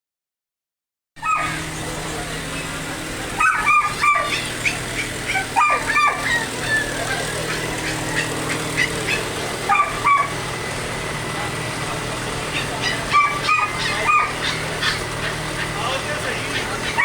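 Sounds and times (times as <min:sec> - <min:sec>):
dog barking: 0:01.2 - 0:01.7, 0:03.4 - 0:10.4, 0:12.5 - 0:15.8, 0:16.5 - 0:17.0.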